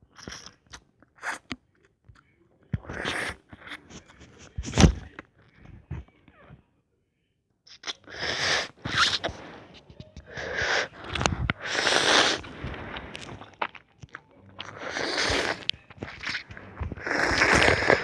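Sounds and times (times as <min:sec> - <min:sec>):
noodles being slurped: 0:00.0 - 0:01.5, 0:02.8 - 0:04.0, 0:07.7 - 0:09.6, 0:10.3 - 0:18.0.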